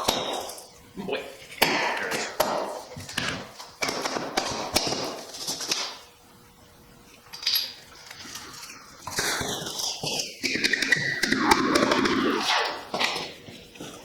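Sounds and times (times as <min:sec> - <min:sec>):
metal parts and tools clinking: 0:07.3 - 0:08.2.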